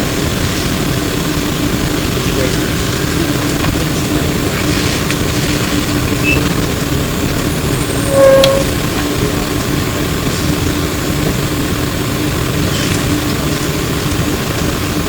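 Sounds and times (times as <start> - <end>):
bus ride rumble: 0.0 - 15.0
constant low hum: 0.0 - 15.0
short loud tone: 7.5 - 9.3.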